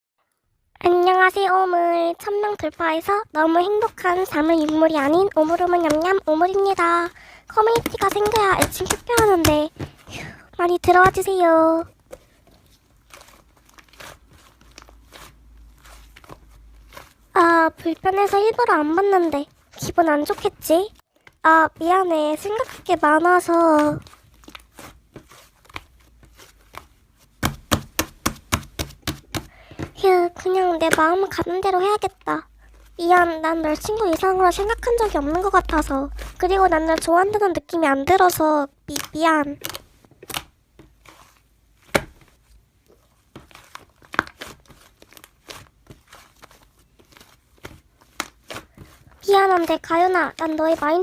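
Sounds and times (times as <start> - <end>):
slime crackling and popping: 43.5 - 50.8.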